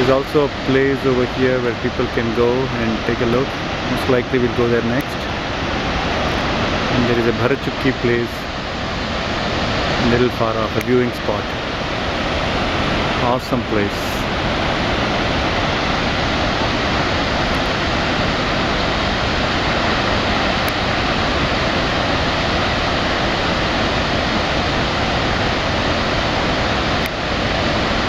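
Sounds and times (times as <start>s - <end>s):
waterfall roaring: 0.0s - 28.0s.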